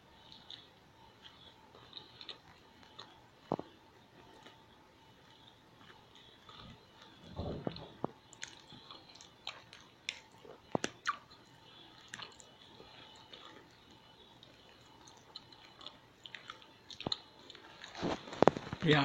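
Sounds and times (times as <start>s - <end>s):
person chewing food: 0.0s - 18.9s
wet mouth clicks: 7.5s - 11.4s.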